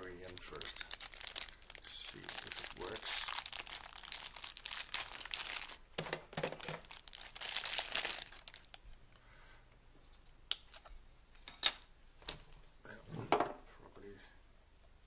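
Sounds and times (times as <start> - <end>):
plastic packaging crinkling and tearing: 0.0 - 8.9.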